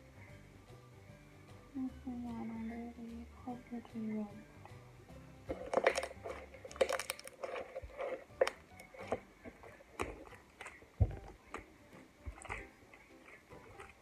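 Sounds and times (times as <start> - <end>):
slime squeezed sticky pops: 5.5 - 11.7.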